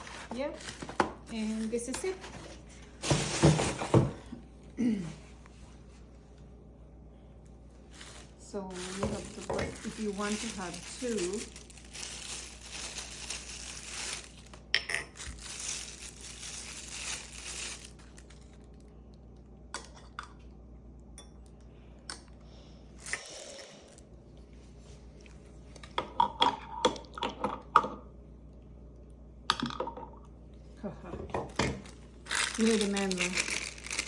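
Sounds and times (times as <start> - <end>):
packaging rustling: 0.0 - 4.1, 7.9 - 18.8, 31.8 - 34.0
plastic and metal parts clattering: 8.1 - 14.5.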